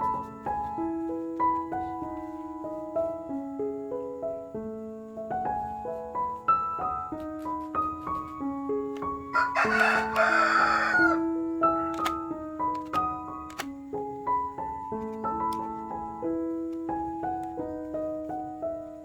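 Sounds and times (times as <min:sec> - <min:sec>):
piano melody: 0:00.0 - 0:19.0.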